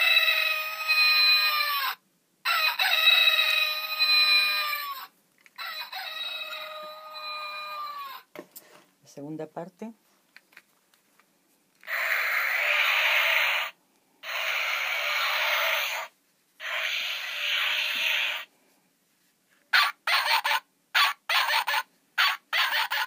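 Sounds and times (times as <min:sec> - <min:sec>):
tinny recorded animal calls: 0:00.0 - 0:08.3, 0:11.8 - 0:18.5.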